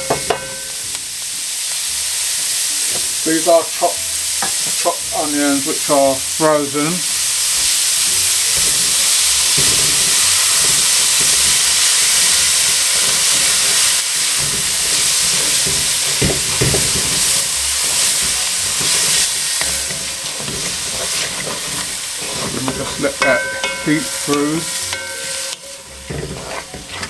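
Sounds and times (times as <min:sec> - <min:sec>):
onions sizzling in a pan: 0:00.0 - 0:27.0
spoon stirring: 0:07.6 - 0:27.0.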